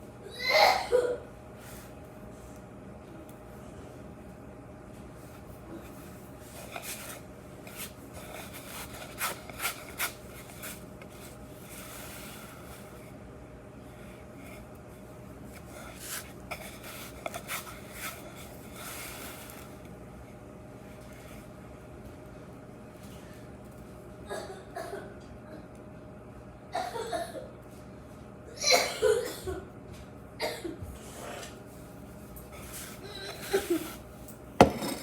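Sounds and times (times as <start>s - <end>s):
toys rubbed on tabletop: 6.5s - 12.9s.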